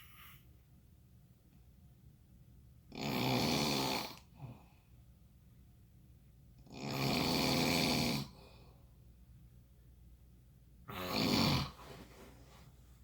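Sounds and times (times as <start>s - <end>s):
rasping snore: 2.9s - 4.2s, 6.7s - 8.4s, 10.9s - 11.8s.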